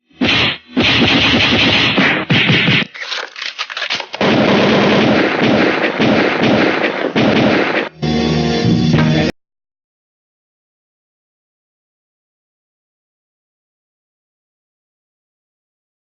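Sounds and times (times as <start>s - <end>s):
gunfire-like sound effect bursts: 0.1s - 3.0s, 4.1s - 8.0s.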